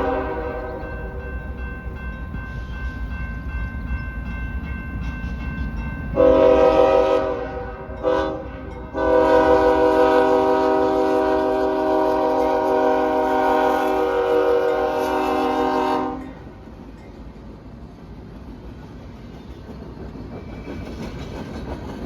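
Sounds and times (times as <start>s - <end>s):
train air horn blasts: 0.0s - 1.2s, 6.2s - 16.5s
diesel locomotives rumbling: 0.0s - 22.0s.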